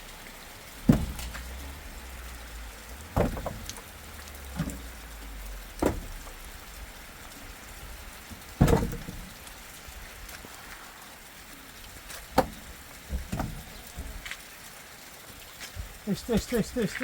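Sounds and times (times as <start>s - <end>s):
rain falling: 0.0s - 17.0s
dull thuds: 0.7s - 6.7s, 7.8s - 9.5s, 12.2s - 14.2s.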